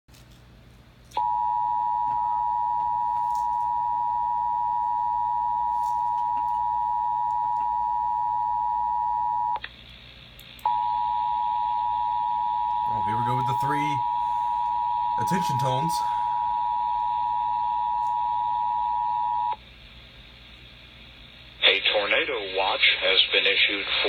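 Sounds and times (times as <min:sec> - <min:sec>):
loud steady electronic alert tone: 0:10.7 - 0:19.6.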